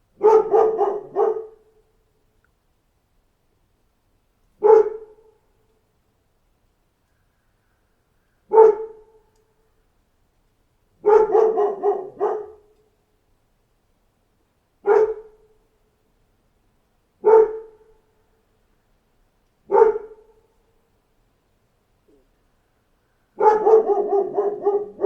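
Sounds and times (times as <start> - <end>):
dog barking: 0.2 - 1.8, 4.6 - 5.4, 8.5 - 9.2, 11.0 - 12.8, 14.8 - 15.5, 17.2 - 18.0, 19.7 - 20.4, 23.4 - 25.0.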